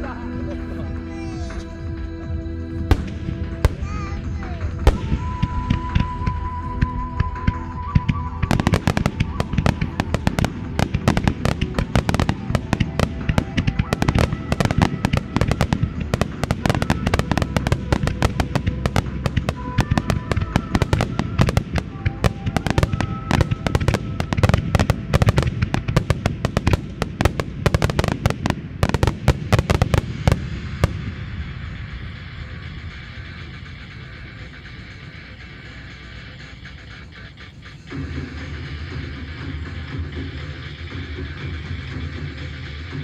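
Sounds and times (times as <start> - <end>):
music: 0.0 - 43.0
firework shells bursting: 4.8 - 33.9.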